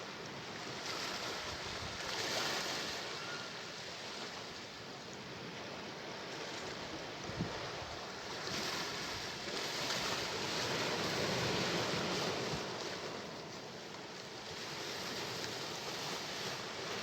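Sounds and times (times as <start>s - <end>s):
sea wave rushing: 5.2s - 13.6s.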